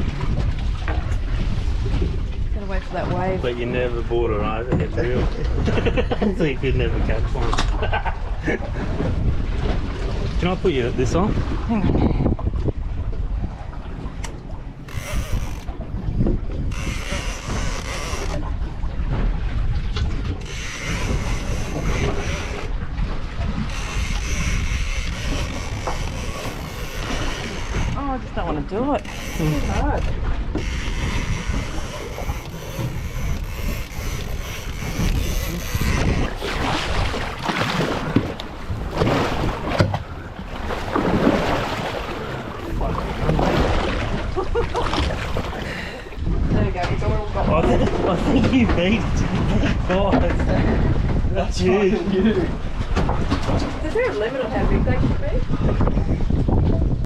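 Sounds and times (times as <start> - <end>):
water washing around boat: 0.0 - 57.0
wind buffeting microphone: 0.0 - 57.0
fishing reel ratcheting: 14.8 - 15.7, 16.7 - 18.4, 20.4 - 22.7, 23.7 - 28.0, 29.1 - 30.0, 30.6 - 36.3.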